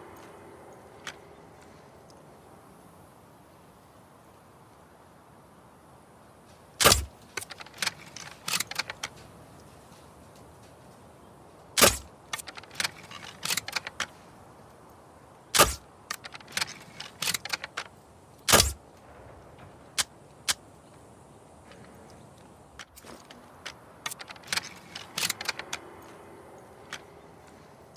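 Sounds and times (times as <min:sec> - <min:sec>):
mechanical clicks and rattles: 0:06.8 - 0:09.8, 0:11.7 - 0:14.2, 0:15.6 - 0:18.8, 0:22.8 - 0:27.9.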